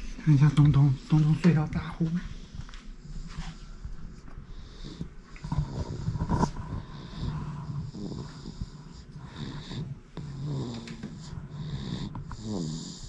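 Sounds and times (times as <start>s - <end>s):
baby snoring: 4.6s - 13.0s.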